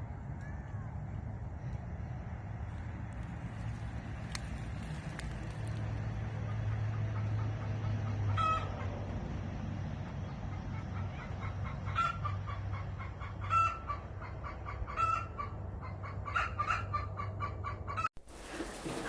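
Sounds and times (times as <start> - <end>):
chickens clucking: 6.4 - 9.1, 10.0 - 19.0.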